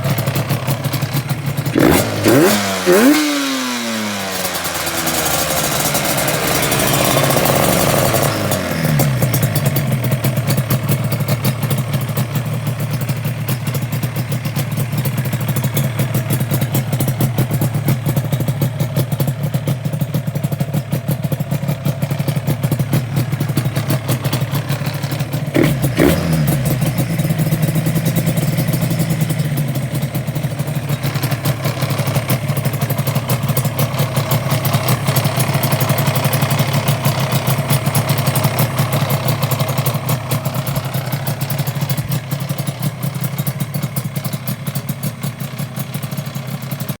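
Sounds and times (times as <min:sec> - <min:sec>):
light engine rattle: 0:00.0 - 0:47.0
motorcycle engine idling: 0:00.0 - 0:47.0.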